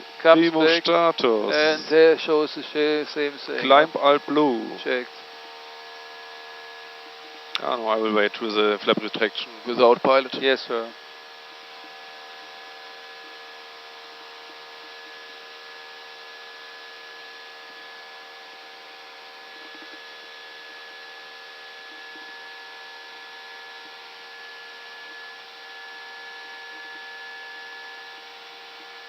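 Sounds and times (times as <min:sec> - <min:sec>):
steady humming tones: 0:00.0 - 0:29.0.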